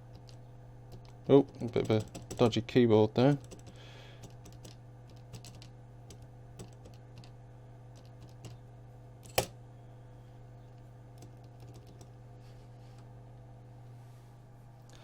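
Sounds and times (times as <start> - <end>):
calculator keys clicking: 0.9 - 2.6, 3.3 - 7.0.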